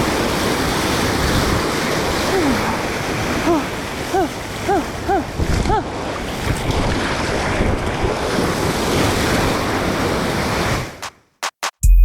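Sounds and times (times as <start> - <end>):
surf and water washing: 0.0 - 11.2
wind buffeting microphone: 5.2 - 10.9.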